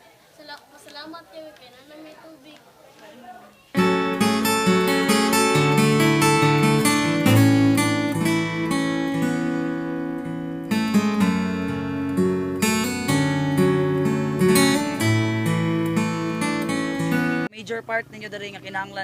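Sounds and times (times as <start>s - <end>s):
strummed acoustic guitar: 3.7s - 18.8s.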